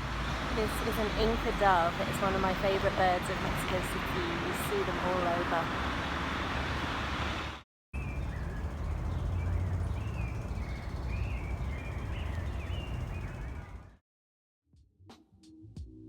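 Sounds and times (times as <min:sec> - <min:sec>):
low outdoor rumble: 0:00.0 - 0:07.4, 0:08.0 - 0:14.0
small birds chirping: 0:08.0 - 0:14.0.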